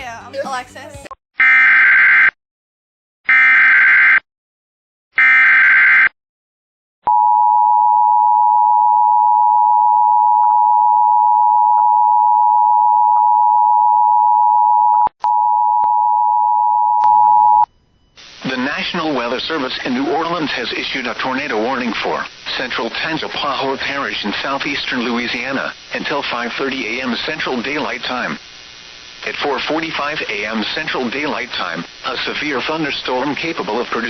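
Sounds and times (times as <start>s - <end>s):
buzzy data bursts: 18.2s - 34.0s.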